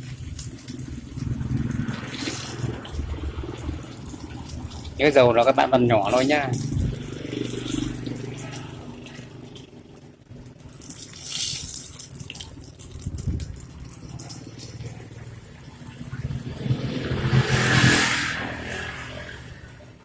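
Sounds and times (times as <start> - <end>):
food sizzling in hot oil: 0.0 - 9.8, 10.4 - 19.7.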